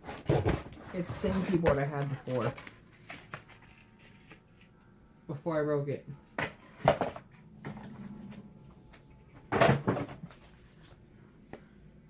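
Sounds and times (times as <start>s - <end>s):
packaging rustling and scraping: 0.0s - 4.8s, 9.5s - 11.0s.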